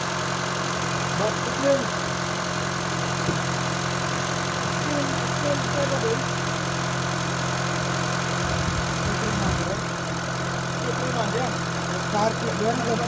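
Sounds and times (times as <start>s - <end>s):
car engine idling: 0.0s - 13.0s
engine chain noise: 0.1s - 13.0s.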